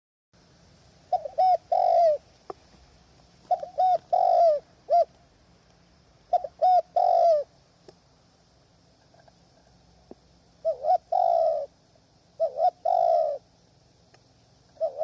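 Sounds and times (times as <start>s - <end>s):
dove cooing: 1.1s - 2.3s, 3.4s - 5.2s, 6.3s - 7.5s, 10.6s - 11.8s, 12.4s - 13.5s, 14.7s - 15.0s
faint click: 5.1s - 5.8s, 7.8s - 8.0s, 14.1s - 14.8s.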